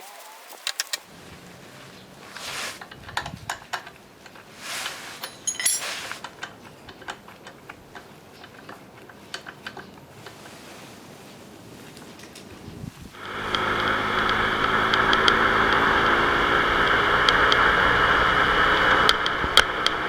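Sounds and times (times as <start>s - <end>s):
short rustle: 0.0s - 13.2s
small metal objects clinking: 4.3s - 7.1s.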